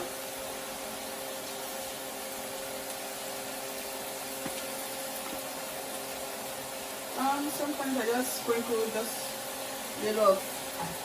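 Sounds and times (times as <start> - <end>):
extractor hood fan running: 0.0 - 11.0.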